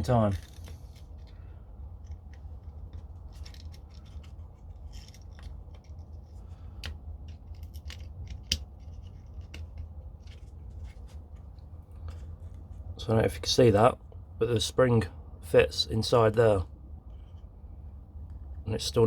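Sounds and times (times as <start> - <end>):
plastic parts clicking and scraping: 0.0 - 12.6.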